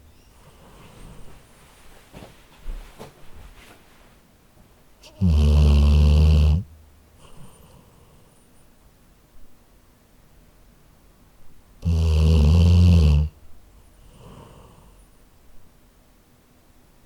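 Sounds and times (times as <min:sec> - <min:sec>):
soft breathing: 0:00.0 - 0:04.2, 0:07.2 - 0:08.7, 0:13.7 - 0:15.3
dog snoring: 0:05.0 - 0:08.4, 0:11.8 - 0:13.4.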